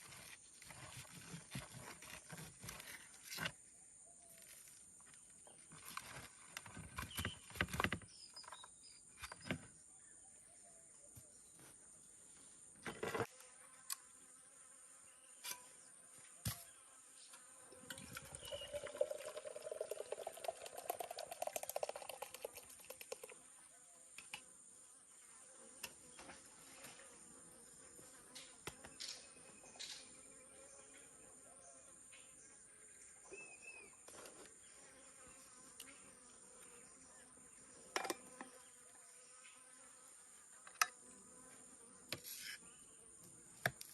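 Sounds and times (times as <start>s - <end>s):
close insect buzz: 11.1s - 43.9s.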